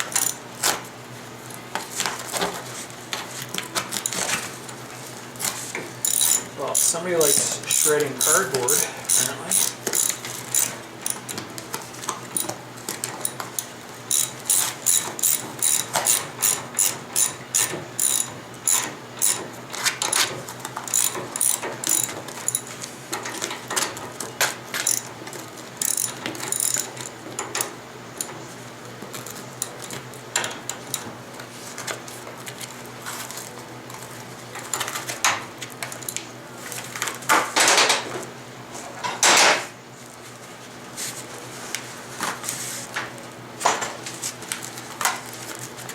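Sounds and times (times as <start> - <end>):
ratchet wrench clicking: 0.1 - 0.4, 6.0 - 11.3, 13.2 - 19.4, 20.9 - 22.6, 24.8 - 25.1, 25.8 - 26.9.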